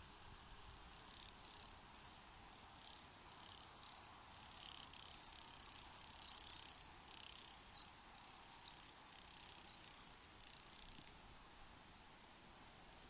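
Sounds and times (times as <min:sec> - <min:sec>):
low background hiss: 0:00.0 - 0:13.0
crickets trilling: 0:00.9 - 0:11.2.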